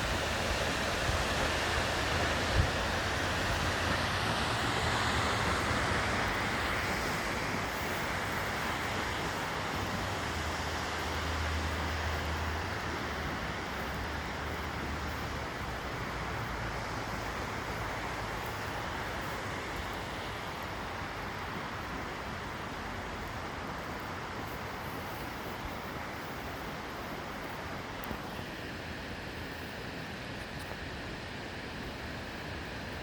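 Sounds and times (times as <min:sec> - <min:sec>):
waterfall rushing: 0:00.0 - 0:24.7.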